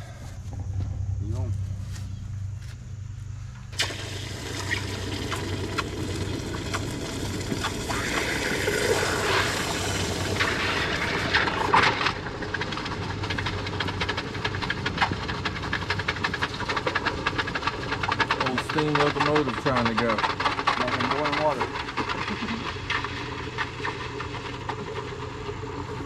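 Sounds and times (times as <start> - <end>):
boiling water crackling pops: 3.7 - 26.0
hot metal hissing in water: 3.8 - 13.4.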